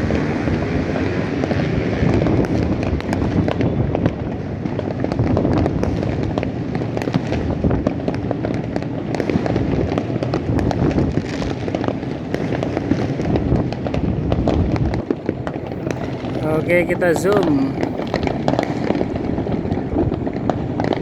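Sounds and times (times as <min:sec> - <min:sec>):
fireworks crackling and popping: 0:00.0 - 0:21.0
low rumble of distant explosions: 0:00.0 - 0:21.0.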